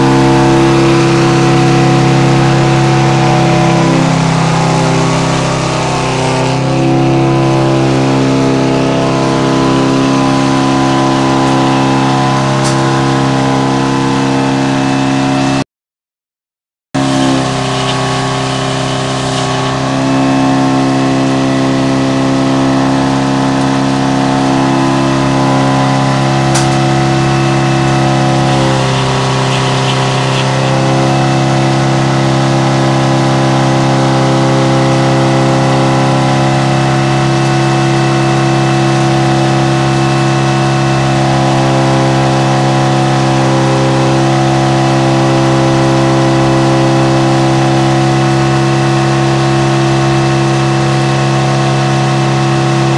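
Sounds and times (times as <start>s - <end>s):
sawmill mechanical drone: 0.0s - 15.6s, 17.0s - 52.9s.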